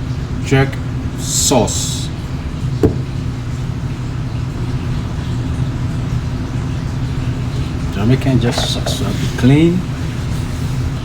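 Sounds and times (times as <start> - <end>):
low machine hum: 0.0 - 11.0
short knock: 2.8 - 3.1.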